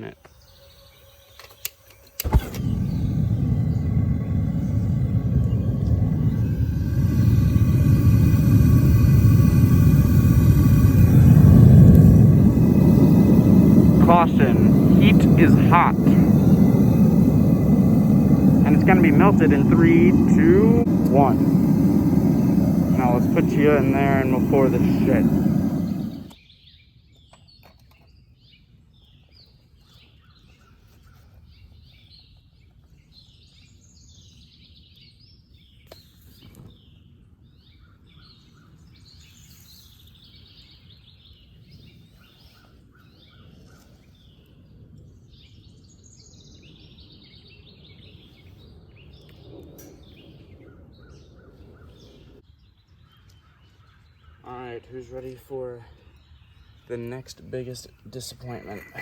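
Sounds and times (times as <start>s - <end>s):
small birds chirping: 0.0s - 59.0s
faint low rumble: 2.3s - 26.4s.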